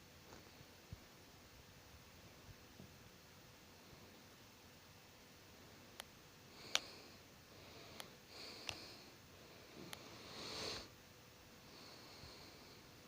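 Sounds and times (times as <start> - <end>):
soft breathy sniffs: 6.5 - 11.0.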